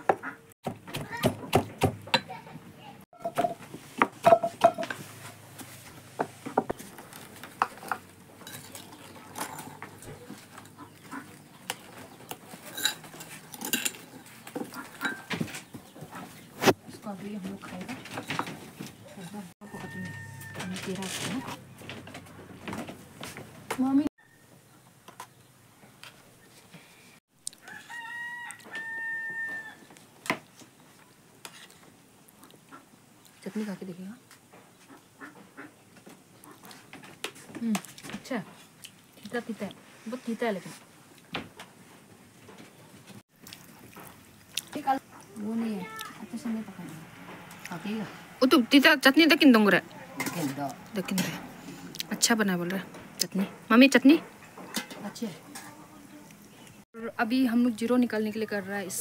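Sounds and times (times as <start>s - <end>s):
utensils clinking against dishes: 4.2s - 5.0s, 7.7s - 10.8s, 11.8s - 15.5s, 54.1s - 55.7s
rooster crowing: 19.6s - 21.1s, 27.6s - 29.9s.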